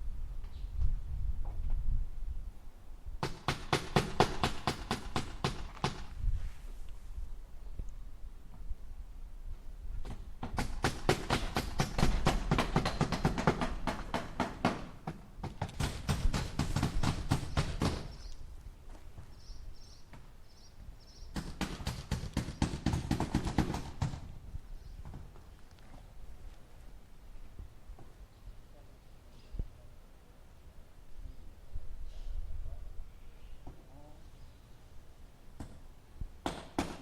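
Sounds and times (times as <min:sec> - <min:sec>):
hammer striking nails into wood: 0:03.2 - 0:06.1, 0:10.0 - 0:18.2, 0:21.4 - 0:24.3, 0:36.4 - 0:37.0.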